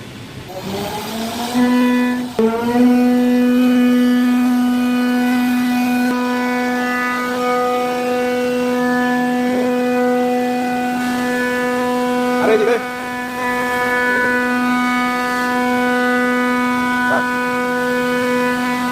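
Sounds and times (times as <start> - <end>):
router spindle high-pitched whine: 0.0 - 18.9.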